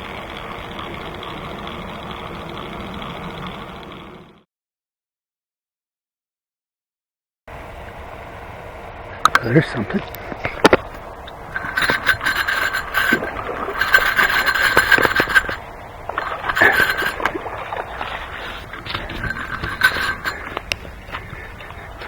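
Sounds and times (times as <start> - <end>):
fishing reel whirring: 0.0 - 4.4, 10.8 - 22.0.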